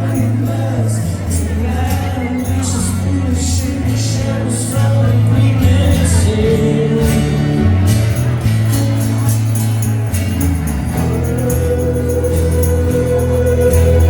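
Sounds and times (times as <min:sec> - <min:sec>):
person singing: 0:00.0 - 0:08.3, 0:10.9 - 0:14.0
acoustic rock band playing: 0:00.0 - 0:14.0
sustained bass notes: 0:00.0 - 0:14.0.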